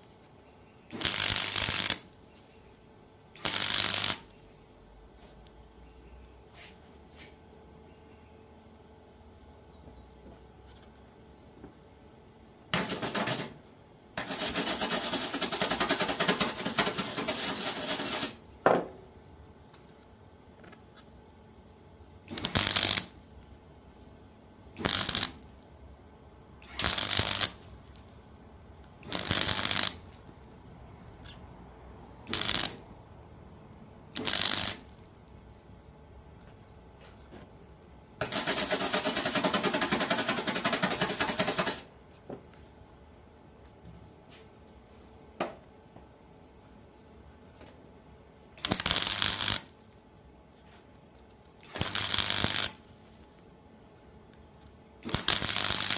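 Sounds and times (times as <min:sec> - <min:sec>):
welding arc crackling: 0:00.9 - 0:02.2, 0:03.4 - 0:04.4, 0:12.8 - 0:13.6, 0:14.2 - 0:18.4, 0:22.2 - 0:23.3, 0:24.8 - 0:25.6, 0:26.6 - 0:28.3, 0:29.0 - 0:30.7, 0:32.2 - 0:32.9, 0:34.1 - 0:35.1, 0:38.2 - 0:41.9, 0:48.6 - 0:49.8, 0:51.6 - 0:53.2, 0:55.0 - 0:55.9.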